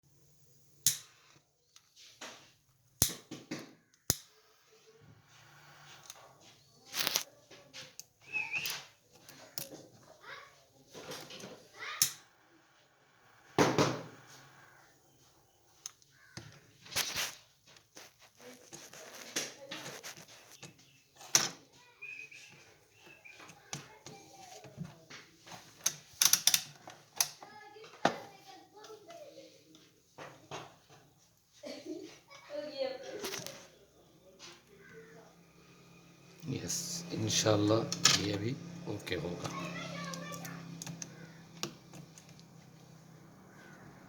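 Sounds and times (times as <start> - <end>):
brief rustle: 5.9 - 9.6, 16.8 - 20.9
clicks and knocks handling tools: 23.0 - 27.4
sharp clicks and taps: 39.4 - 42.5.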